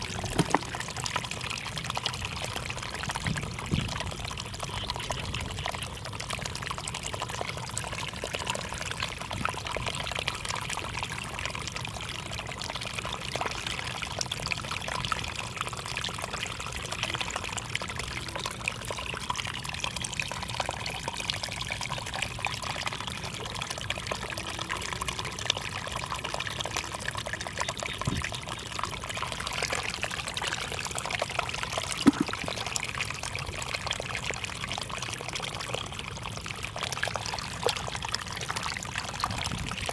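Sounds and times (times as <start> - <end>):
small clicks and splashes: 0.0 - 6.4, 26.3 - 39.9
water running and trickling: 0.0 - 39.9.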